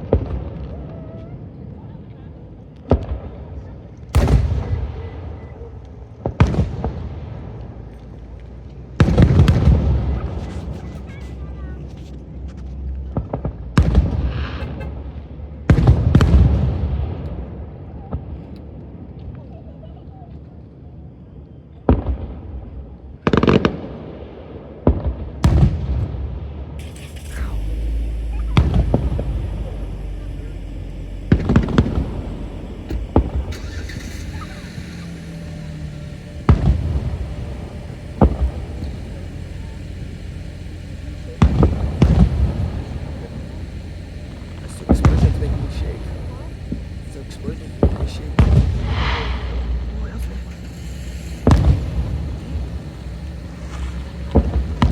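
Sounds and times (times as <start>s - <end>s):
fireworks booming: 4.2s - 5.4s, 26.8s - 54.9s
low rumbling echo: 26.8s - 54.9s.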